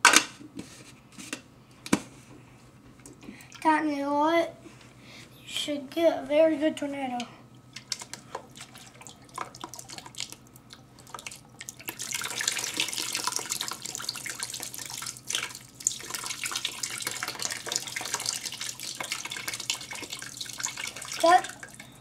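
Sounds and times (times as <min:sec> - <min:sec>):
water swirling in plastic cup: 0:07.9 - 0:21.9.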